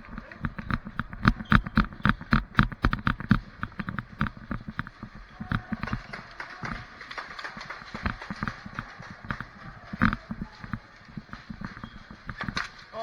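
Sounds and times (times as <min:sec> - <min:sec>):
footsteps of person running: 0:00.0 - 0:12.8.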